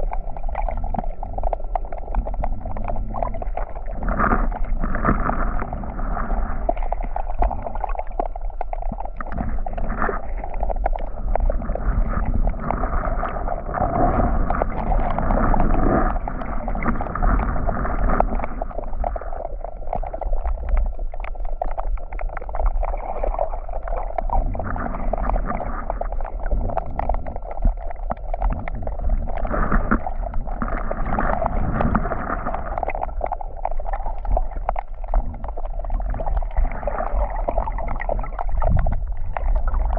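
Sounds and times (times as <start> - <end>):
sea water washing on beach: 0.0 - 39.9
wind rumble on microphone: 35.2 - 39.9.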